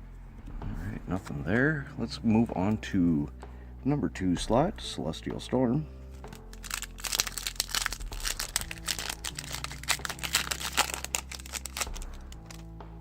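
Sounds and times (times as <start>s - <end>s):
foil wrapper crinkling and tearing: 6.3s - 12.7s.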